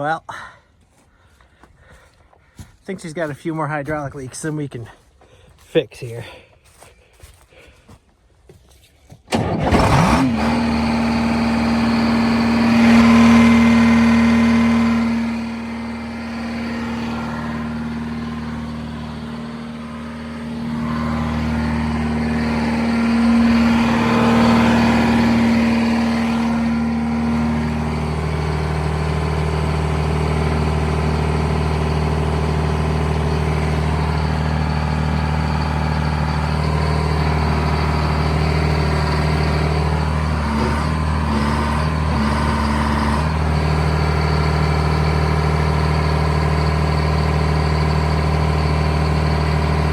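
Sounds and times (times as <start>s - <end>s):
excavator diesel engine running: 9.3s - 49.9s
steady whine: 10.5s - 42.7s.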